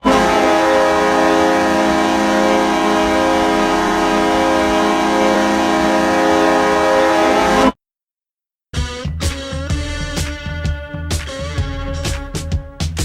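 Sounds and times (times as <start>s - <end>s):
hockey goal horn blast: 0.0s - 7.8s.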